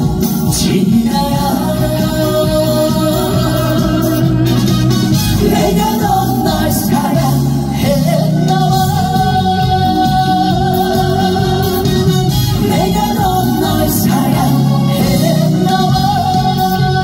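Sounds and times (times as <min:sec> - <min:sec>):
man singing with band over loudspeaker: 0:00.0 - 0:17.0.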